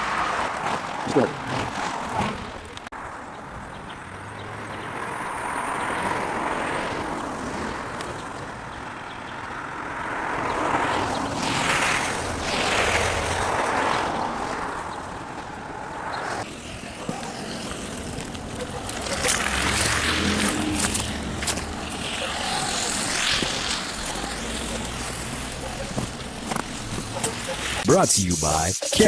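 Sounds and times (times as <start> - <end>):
traffic passing on wet road: 9.5 - 27.8.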